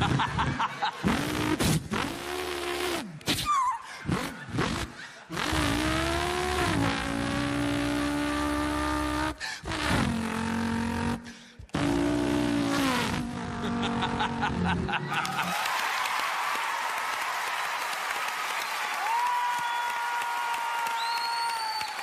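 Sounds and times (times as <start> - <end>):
person imitating car engine: 0.0 - 15.5.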